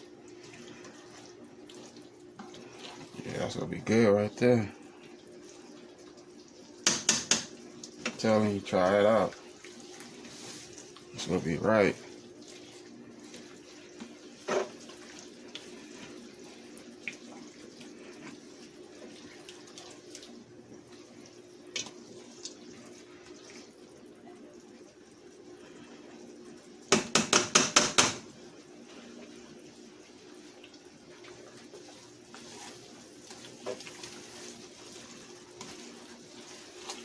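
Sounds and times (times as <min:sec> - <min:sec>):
utensil knocking on pan: 0:06.8 - 0:07.5, 0:26.9 - 0:28.2
food sizzling in a frying pan: 0:26.1 - 0:37.0.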